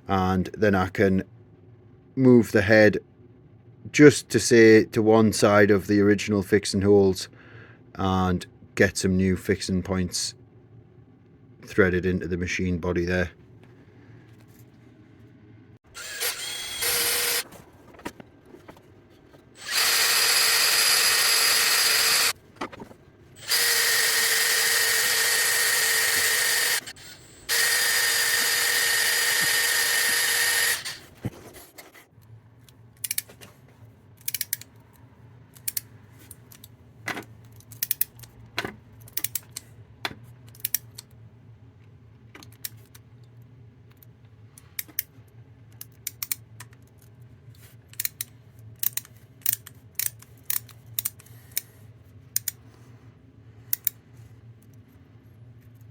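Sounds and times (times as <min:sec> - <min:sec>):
power drill whining: 0:15.9 - 0:17.4, 0:19.6 - 0:22.4, 0:23.4 - 0:31.1.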